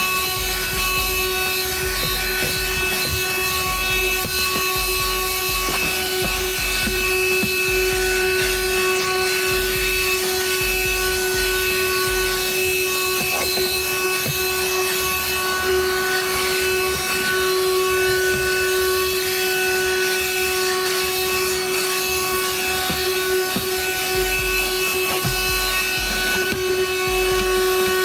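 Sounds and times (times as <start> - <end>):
handheld vacuum motor whine: 0.0 - 28.0
brush scrubbing car floor: 21.7 - 27.6.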